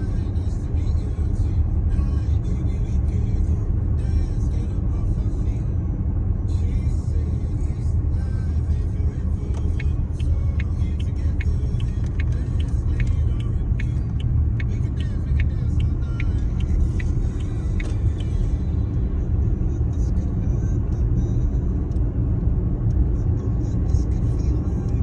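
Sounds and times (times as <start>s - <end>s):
road and engine rumble: 0.0s - 25.0s
light regular ticking: 9.4s - 18.6s.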